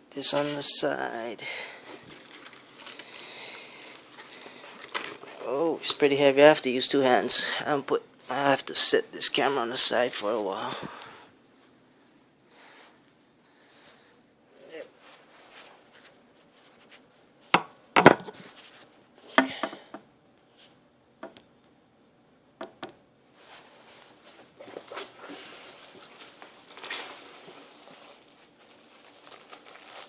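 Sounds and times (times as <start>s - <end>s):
packing material rustling: 1.7s - 5.5s, 24.8s - 30.0s.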